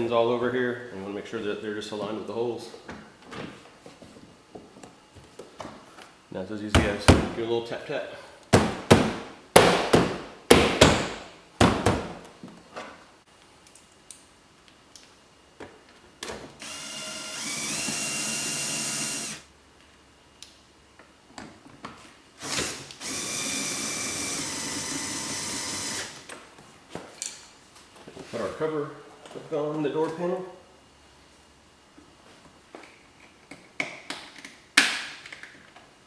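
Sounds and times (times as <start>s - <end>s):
cordless drill whining: 16.6s - 19.5s, 22.4s - 26.3s.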